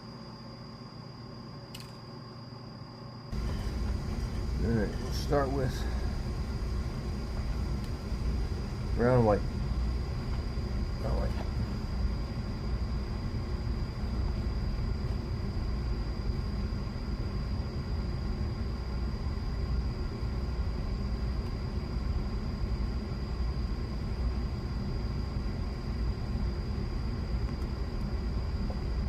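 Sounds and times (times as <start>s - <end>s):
steady low rumble: 3.3s - 29.0s.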